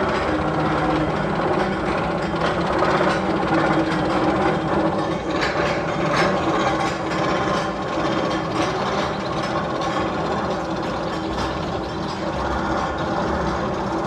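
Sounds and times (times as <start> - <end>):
mechanical running hum: 0.0 - 14.0
sharp clicks and clacks: 0.0 - 14.0.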